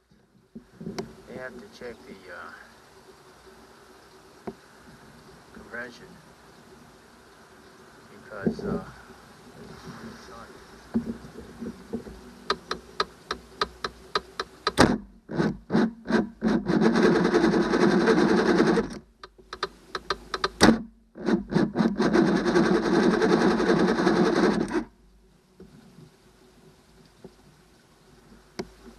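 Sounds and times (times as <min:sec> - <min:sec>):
outboard engine cranking: 0:11.8 - 0:24.9
sharp clicks: 0:12.5 - 0:15.0, 0:18.2 - 0:20.8.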